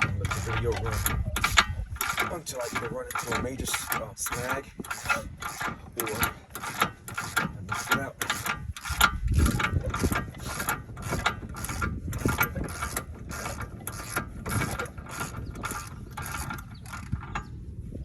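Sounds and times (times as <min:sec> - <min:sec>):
ratchet wrench clicking: 0:00.0 - 0:17.4.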